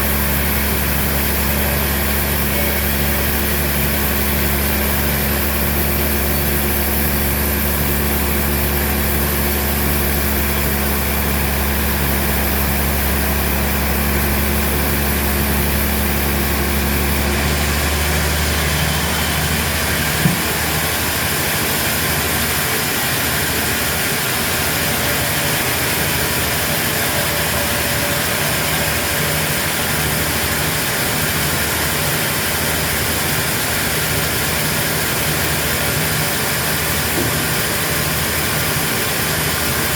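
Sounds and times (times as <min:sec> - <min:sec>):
sawmill machinery running: 0:00.0 - 0:39.9
short knock: 0:20.2 - 0:20.6.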